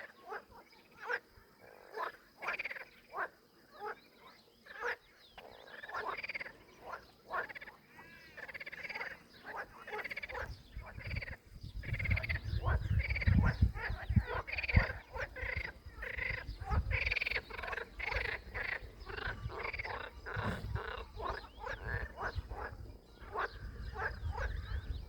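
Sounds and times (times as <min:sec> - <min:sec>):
short animal calls: 0:07.5 - 0:09.1, 0:14.3 - 0:22.3.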